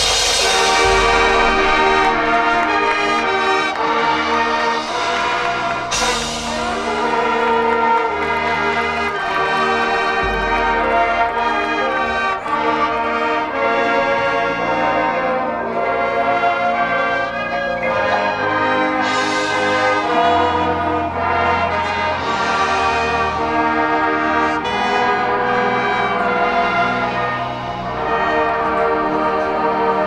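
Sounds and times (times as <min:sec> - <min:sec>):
deep bass notes: 0:00.0 - 0:16.8
brass band playing chords: 0:00.0 - 0:30.0.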